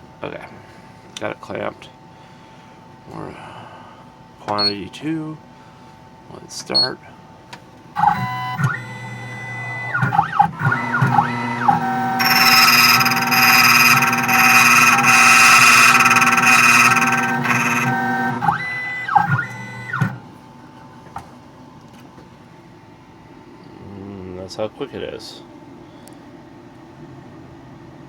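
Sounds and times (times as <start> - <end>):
stepper motors whining: 8.0 - 20.2
cutter grinding key blade: 10.4 - 18.6.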